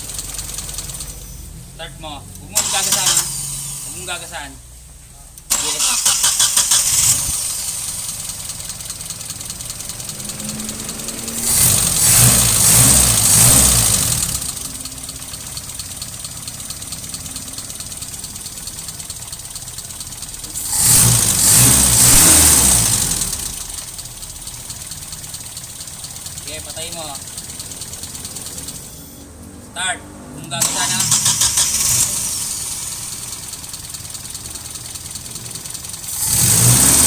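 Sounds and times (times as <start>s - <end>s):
engine idling roughly: 0.0s - 29.2s, 30.6s - 37.0s.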